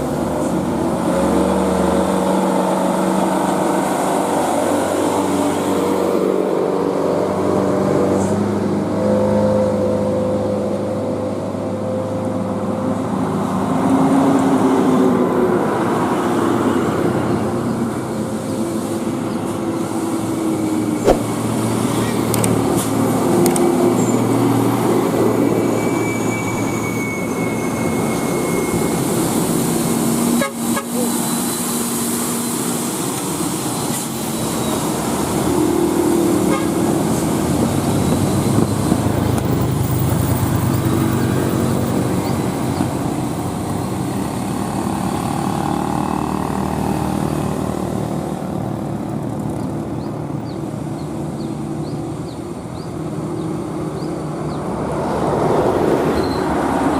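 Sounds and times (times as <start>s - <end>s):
traffic: 0.0s - 56.9s
vehicle horn sounding: 36.5s - 36.8s.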